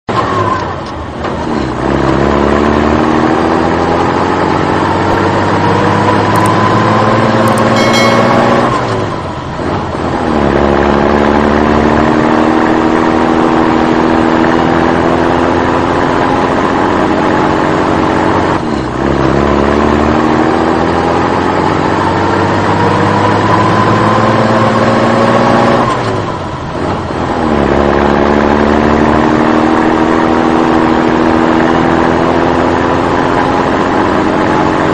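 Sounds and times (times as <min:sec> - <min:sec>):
truck engine revving through gears: 0:00.1 - 0:34.9
brief high-pitched tone: 0:07.5 - 0:09.3.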